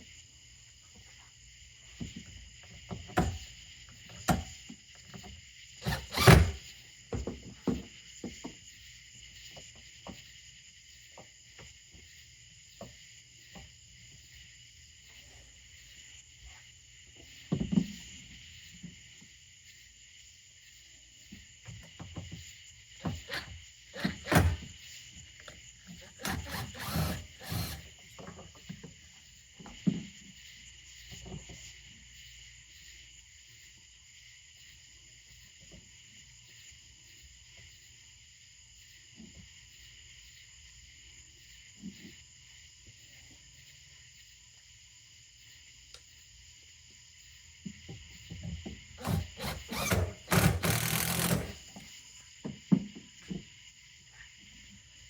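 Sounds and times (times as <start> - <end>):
insects chirring: 0.0 - 55.0
knocks and clatter of hand work: 2.0 - 3.5, 5.8 - 8.6, 47.9 - 53.5.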